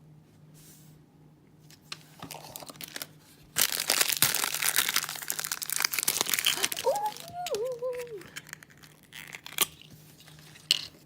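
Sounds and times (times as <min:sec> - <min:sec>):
plastic wrapper crinkling and tearing: 0:02.2 - 0:10.8.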